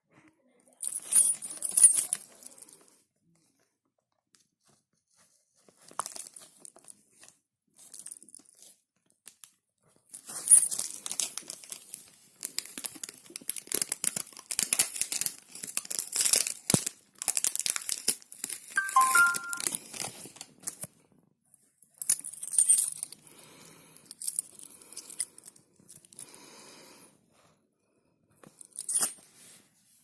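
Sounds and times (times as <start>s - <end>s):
packaging tearing and crinkling: 10.3s - 18.8s.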